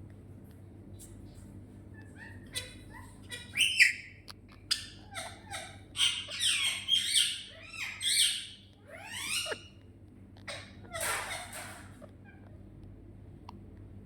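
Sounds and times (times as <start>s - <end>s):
parrot chirping and squawking: 2.0s - 12.6s.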